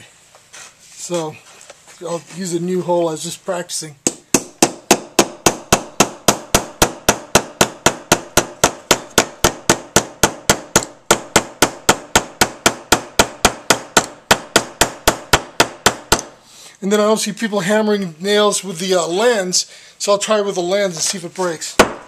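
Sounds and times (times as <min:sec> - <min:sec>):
flashlight hammering nail into wood: 0:04.0 - 0:16.4, 0:21.8 - 0:22.0.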